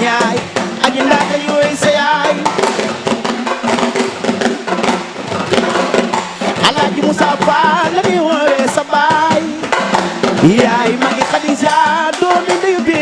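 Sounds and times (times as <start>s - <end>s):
person singing ornamented voice: 0.0s - 2.7s, 6.6s - 9.8s, 10.4s - 13.0s
drums playing fast pattern: 0.0s - 13.0s.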